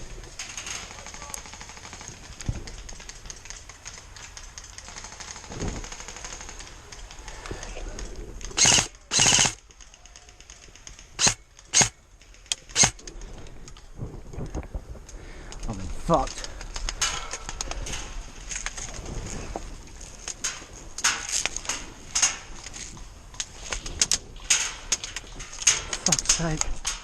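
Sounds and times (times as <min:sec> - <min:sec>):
airsoft guns firing bursts: 0:08.5 - 0:09.6.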